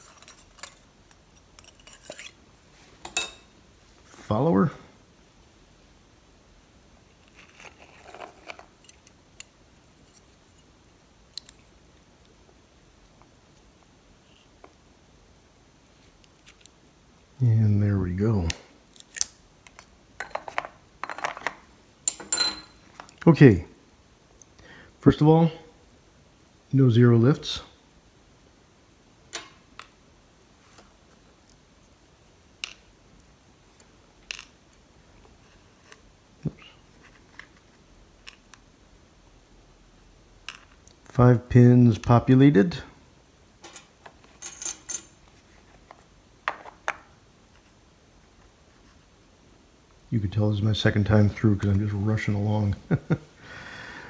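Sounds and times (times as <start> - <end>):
metal lock parts clicking and scraping: 0.0 - 2.4, 18.9 - 22.8, 43.6 - 45.1
light clicks of lock pins and tools: 18.5 - 20.0.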